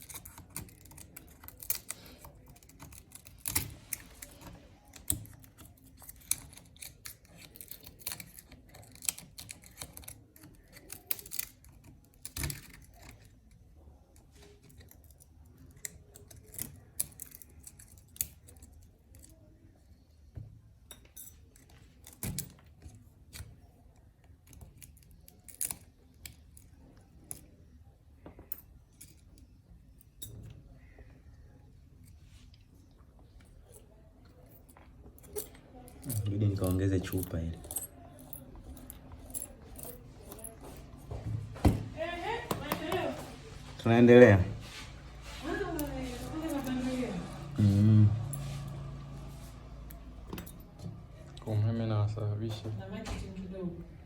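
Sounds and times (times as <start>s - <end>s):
hand tools clicking and tapping: 0.0s - 13.2s, 34.4s - 43.3s.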